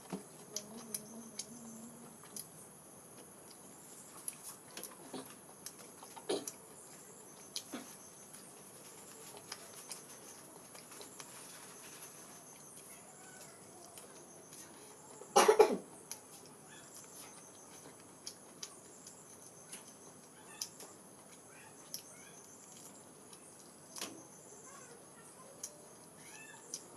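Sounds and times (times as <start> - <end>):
faint chewing: 0.0 - 26.9
loud cough: 15.4 - 15.8.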